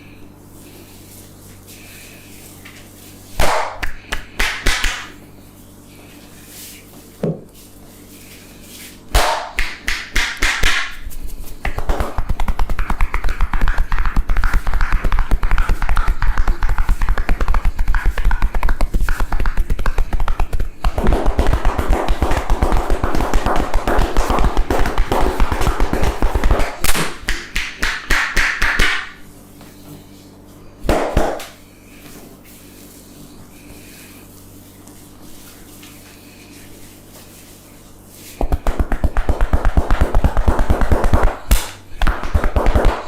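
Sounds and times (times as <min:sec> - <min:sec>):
hands tapping on a head: 0:03.4 - 0:05.1, 0:09.2 - 0:11.0, 0:11.6 - 0:29.2, 0:30.9 - 0:31.6, 0:38.4 - 0:43.0.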